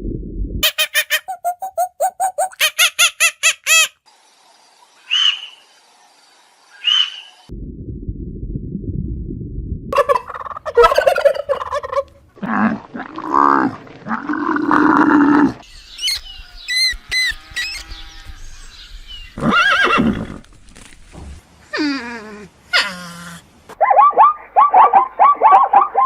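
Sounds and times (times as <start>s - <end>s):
low rumbling noise: 0.0s - 0.6s, 7.5s - 15.6s
animal calls: 0.6s - 3.6s, 22.7s - 26.0s
high chirping calls: 0.6s - 3.8s, 5.0s - 5.7s, 6.7s - 7.5s, 15.6s - 19.4s.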